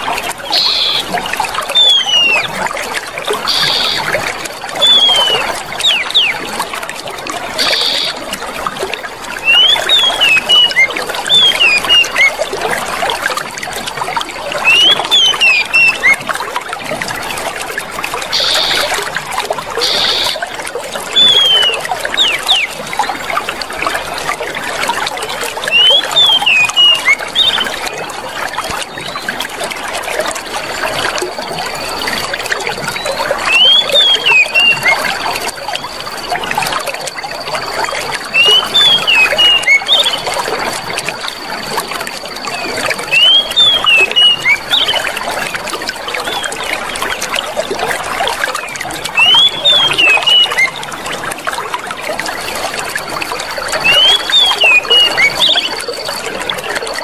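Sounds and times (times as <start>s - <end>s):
water running and trickling: 0.0s - 57.0s
high chirps: 0.4s - 2.5s, 3.5s - 4.2s, 4.8s - 6.5s, 7.6s - 8.2s, 9.5s - 12.4s, 19.8s - 20.4s, 21.2s - 22.8s, 33.5s - 36.0s, 38.3s - 40.4s, 42.2s - 45.0s, 49.2s - 50.8s, 53.8s - 56.3s.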